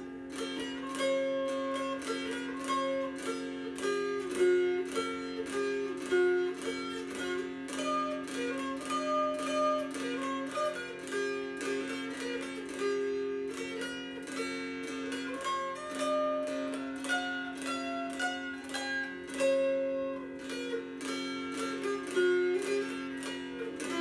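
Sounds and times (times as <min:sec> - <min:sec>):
mountain dulcimer playing: 0:00.0 - 0:24.0.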